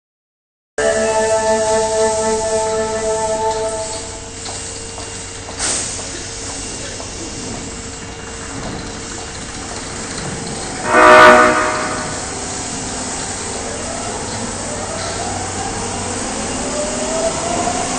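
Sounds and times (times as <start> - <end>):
steady chord of tones: 0.8 - 4.4
train horn blast: 0.8 - 4.4, 10.8 - 12.4.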